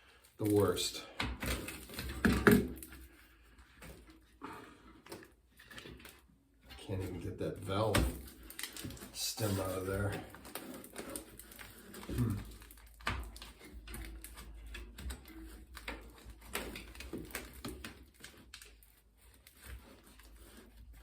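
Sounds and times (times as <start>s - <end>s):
hands clicking and rubbing a tire: 7.6s - 21.0s
short low voice: 12.1s - 12.5s.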